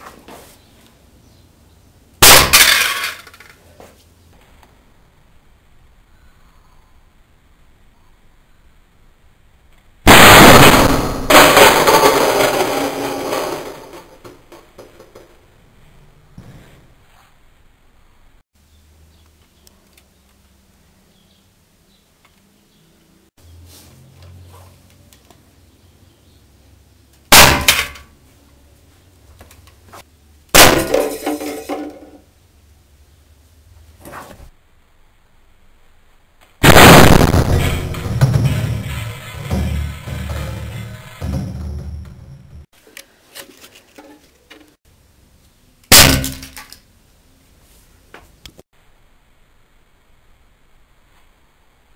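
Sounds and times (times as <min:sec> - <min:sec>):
air rifle shot blast: 0:10.1 - 0:12.2, 0:36.6 - 0:39.9.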